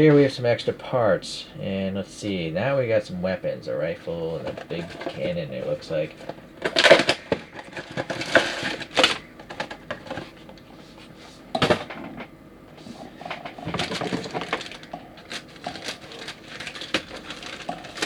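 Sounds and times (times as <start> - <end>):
plastic parts clicking and clattering: 4.4 - 5.4, 6.0 - 10.3, 13.3 - 18.0
plastic bag crinkling: 4.4 - 10.3, 13.6 - 18.0.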